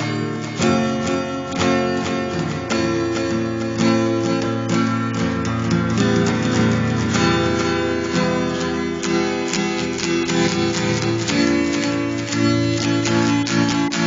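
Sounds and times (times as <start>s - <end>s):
strummed acoustic guitar: 0.0s - 14.0s.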